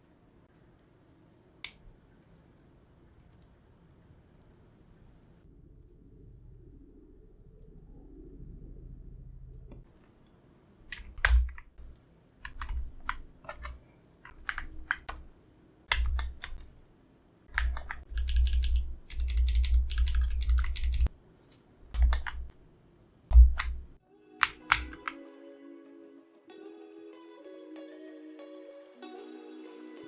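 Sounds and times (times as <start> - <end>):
mechanical keyboard typing: 10.8 - 15.3, 15.9 - 16.8, 17.5 - 21.1, 21.9 - 22.6, 23.3 - 25.2.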